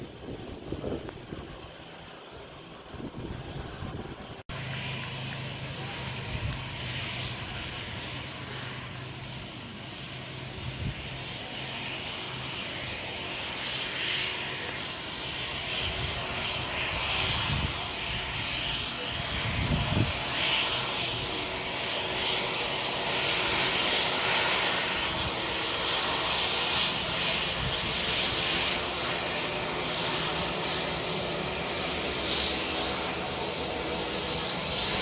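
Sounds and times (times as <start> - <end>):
wind buffeting microphone: 0.0 - 9.4, 10.1 - 12.4, 15.1 - 22.4
jet engines running: 0.0 - 35.0.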